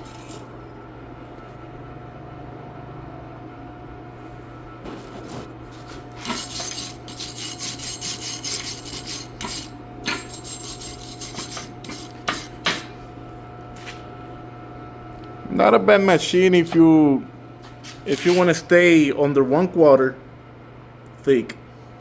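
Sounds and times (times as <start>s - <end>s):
welding transformer hum: 4.2s - 20.4s
wire brush scrubbing metal: 5.1s - 12.7s.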